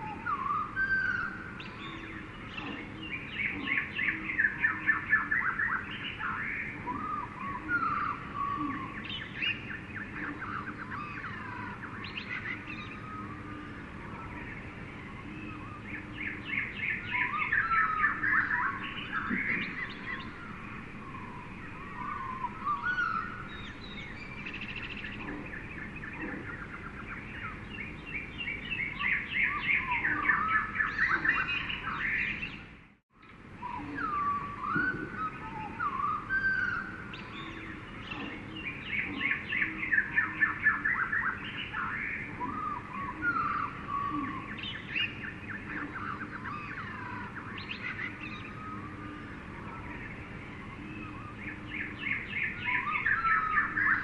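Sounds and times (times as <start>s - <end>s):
birds chirping and trilling: 0.0s - 54.0s
steady background hiss: 0.0s - 54.0s.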